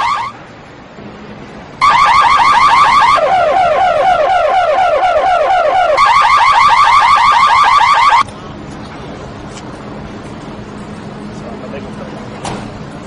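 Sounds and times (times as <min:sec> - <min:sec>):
car alarm warbling: 0:00.0 - 0:00.4, 0:01.8 - 0:08.2.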